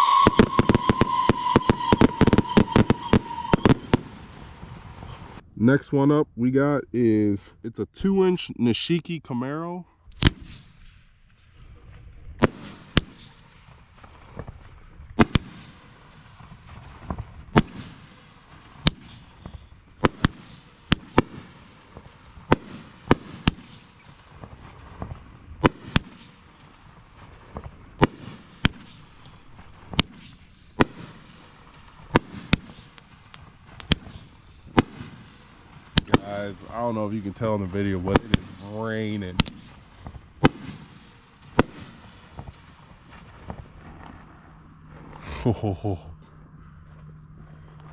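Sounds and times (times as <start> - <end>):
firework bangs with echo: 0.0 - 5.4, 10.2 - 11.4, 12.4 - 45.2.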